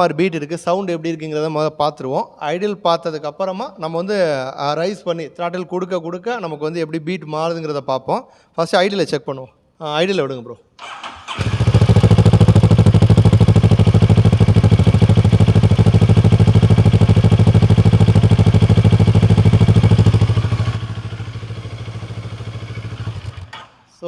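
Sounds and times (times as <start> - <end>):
motorcycle engine idling: 11.3 - 23.6.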